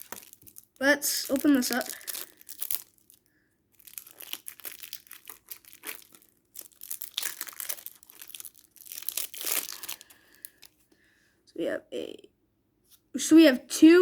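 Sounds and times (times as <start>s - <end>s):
plastic wrapping torn and crumpled: 0.0s - 10.8s.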